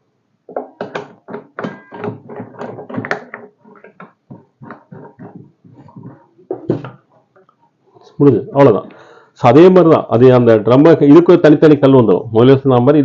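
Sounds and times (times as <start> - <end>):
knocks and clicks of parts handled: 0.5 - 7.5.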